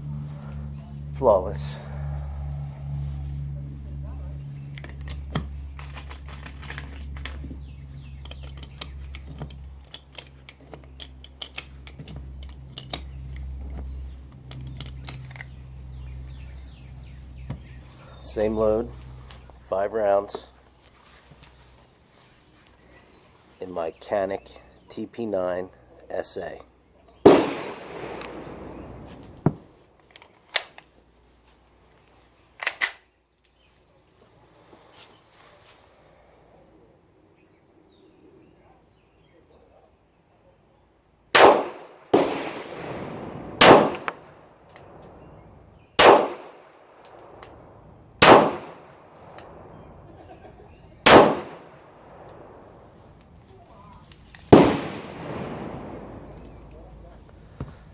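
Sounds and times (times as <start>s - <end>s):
low hum: 0.0s - 19.8s, 41.8s - 57.9s
clicks of handling a pistol: 8.2s - 15.6s, 29.1s - 31.0s, 32.0s - 33.6s, 43.9s - 45.3s, 46.7s - 47.6s, 48.8s - 49.6s
pistol shots: 27.2s - 28.9s, 41.3s - 45.0s, 46.0s - 47.1s, 48.2s - 49.7s, 51.0s - 52.2s, 54.5s - 56.6s
gunshot echo: 27.2s - 29.1s, 41.4s - 44.4s, 46.0s - 46.7s, 48.2s - 48.9s, 51.0s - 52.2s, 54.5s - 56.6s.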